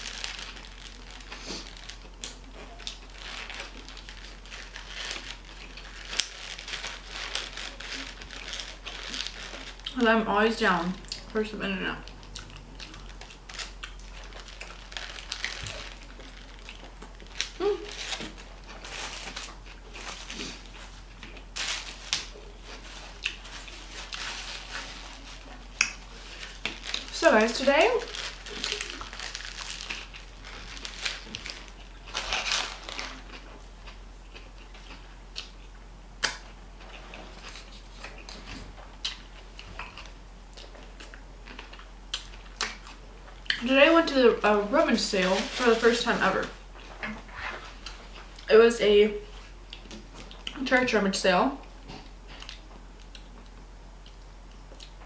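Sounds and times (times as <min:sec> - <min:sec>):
paper wrappers rustling: 0:00.0 - 0:11.1, 0:12.8 - 0:33.4, 0:43.6 - 0:48.3
chewing food: 0:12.0 - 0:21.5, 0:28.1 - 0:43.6, 0:49.3 - 0:50.6, 0:51.6 - 0:55.0
chewing: 0:12.1 - 0:21.5, 0:51.6 - 0:55.0.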